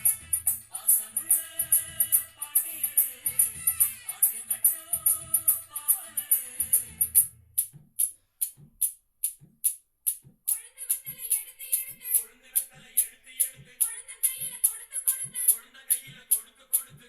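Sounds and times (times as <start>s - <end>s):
music playing: 0.0s - 7.3s
shaker rhythm: 0.0s - 7.7s, 10.1s - 17.0s
soft drum beats: 0.0s - 8.0s, 8.6s - 8.8s, 10.2s - 17.0s.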